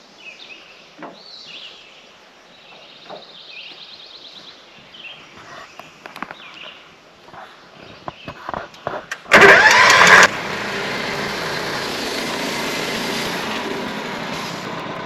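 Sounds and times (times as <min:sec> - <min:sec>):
songbirds chirping: 0:00.0 - 0:09.4
outdoor background noise: 0:00.0 - 0:15.0.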